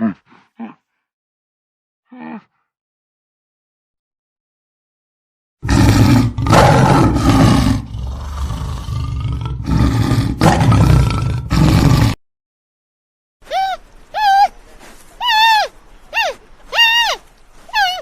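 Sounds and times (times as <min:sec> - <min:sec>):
animal growling: 0:05.6 - 0:12.2
large animal roaring: 0:05.6 - 0:12.2.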